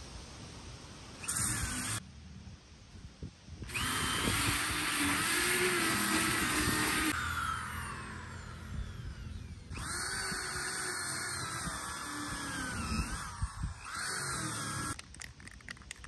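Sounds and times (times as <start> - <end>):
electric sander running: 3.7 - 15.0.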